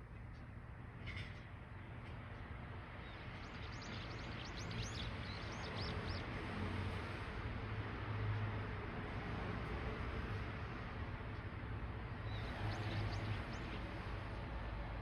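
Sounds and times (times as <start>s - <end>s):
small birds chirping: 3.0s - 6.4s.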